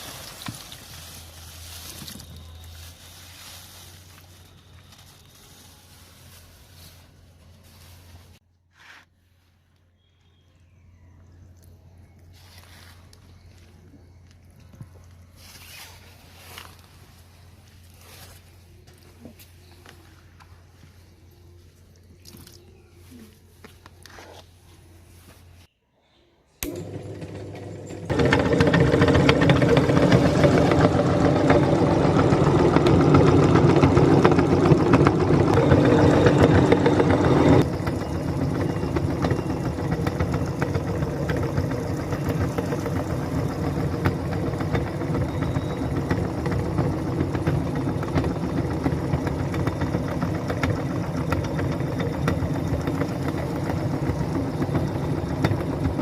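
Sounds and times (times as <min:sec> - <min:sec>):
electric meat grinder motor: 0:26.6 - 0:56.0.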